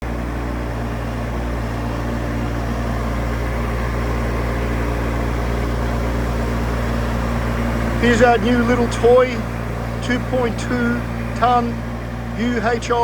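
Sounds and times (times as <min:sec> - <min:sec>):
diesel excavator engine running: 0:00.0 - 0:13.0.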